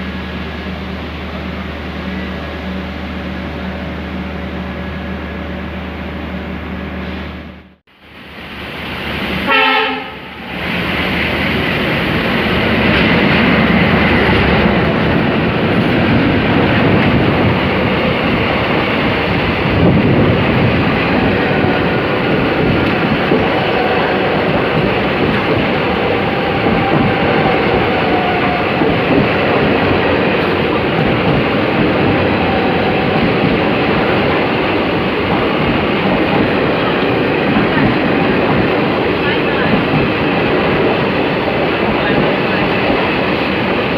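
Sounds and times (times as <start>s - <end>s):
train rumbling on rails: 0.0s - 43.9s
train horn: 9.4s - 10.4s, 23.4s - 24.6s, 25.8s - 28.8s.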